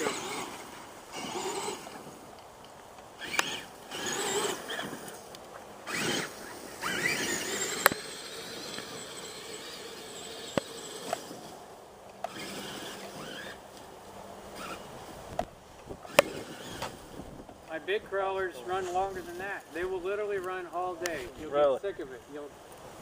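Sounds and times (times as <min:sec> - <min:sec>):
toy truck electric motor whining: 0:00.0 - 0:02.2, 0:03.2 - 0:11.6, 0:12.2 - 0:13.6, 0:14.6 - 0:14.9, 0:16.0 - 0:17.2.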